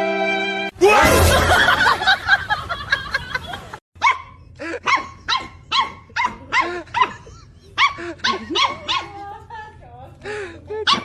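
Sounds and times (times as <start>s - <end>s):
dogs barking: 4.0s - 9.5s, 10.8s - 11.0s.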